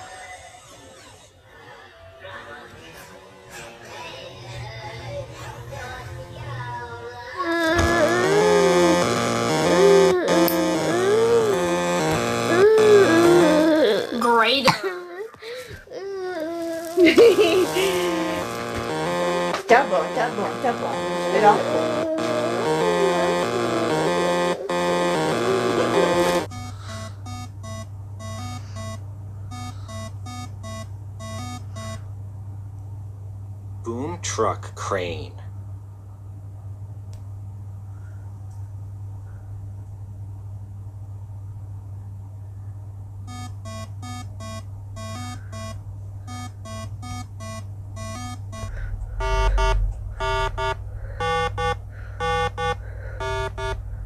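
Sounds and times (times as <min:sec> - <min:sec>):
steady low hum: 0:04.6 - 0:54.0
short electronic beeps: 0:25.9 - 0:32.0, 0:43.3 - 0:53.8.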